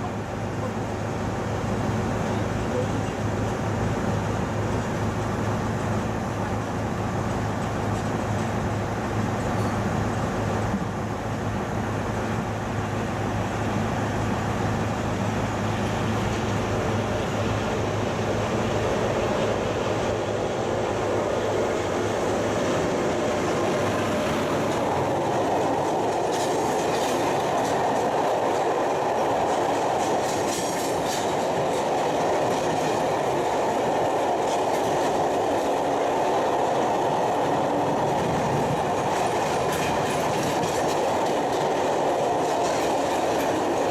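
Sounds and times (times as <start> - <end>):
freight train rolling past: 0.0 - 43.9
wheels clicking over rail joints: 23.5 - 43.9.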